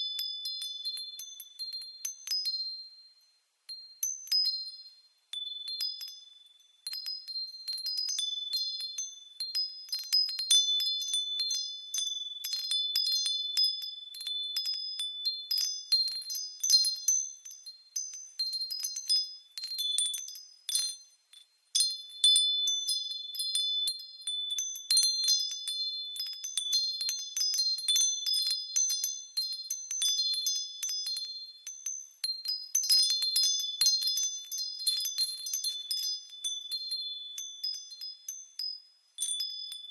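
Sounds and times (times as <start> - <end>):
wind chimes jingling: 0.0 - 39.9.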